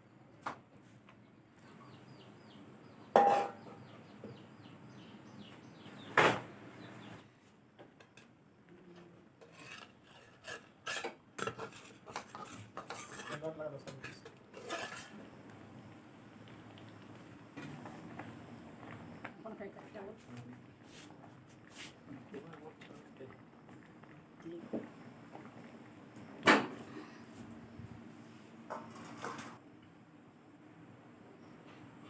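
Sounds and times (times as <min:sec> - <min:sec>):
metal utensils clanking against pot: 0:03.2 - 0:03.7, 0:09.4 - 0:15.2
light clinks and scrapes: 0:09.4 - 0:15.2.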